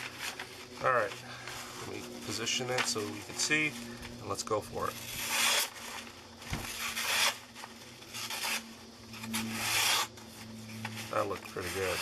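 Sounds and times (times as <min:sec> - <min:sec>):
knife slicing paper: 0:04.9 - 0:10.2, 0:10.8 - 0:12.0.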